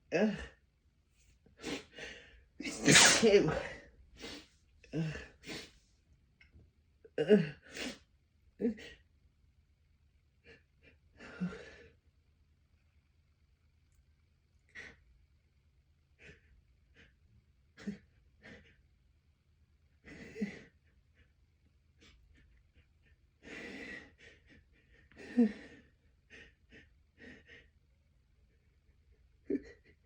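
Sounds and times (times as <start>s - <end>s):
person gasping and breathing: 2.8s - 5.7s.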